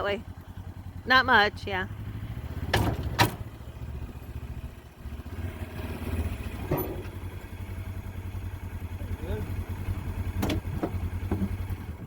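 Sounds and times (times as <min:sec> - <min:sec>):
engine idling: 0:00.0 - 0:12.0
clatter: 0:10.2 - 0:12.0.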